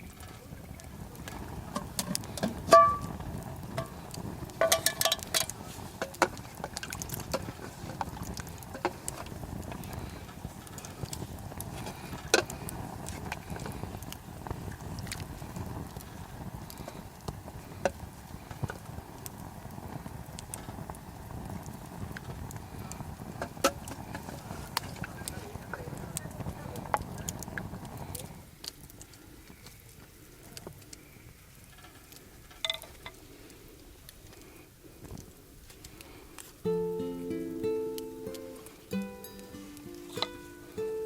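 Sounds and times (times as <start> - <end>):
campfire crackling and popping: 0.0 - 41.0
metal cookware clinks: 4.6 - 5.4.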